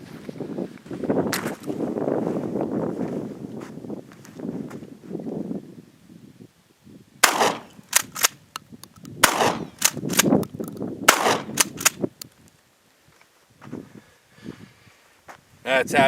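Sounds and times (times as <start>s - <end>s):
shotgun firing: 7.2s - 8.3s, 9.2s - 10.3s, 11.1s - 12.0s.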